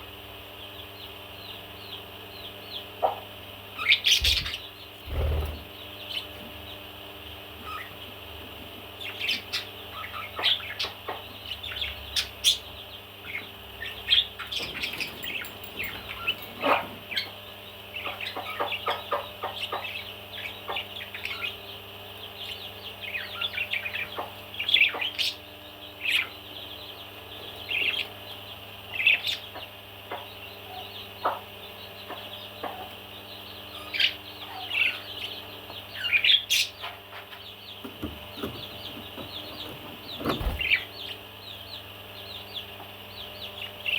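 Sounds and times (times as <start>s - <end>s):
parrot chirping and chattering: 3.8s - 6.3s.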